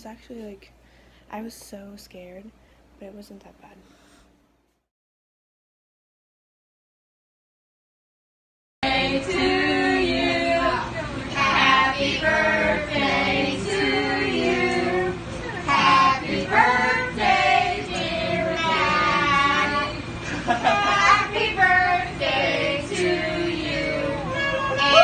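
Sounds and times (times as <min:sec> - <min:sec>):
song with high sung vocals: 0:08.8 - 0:25.0.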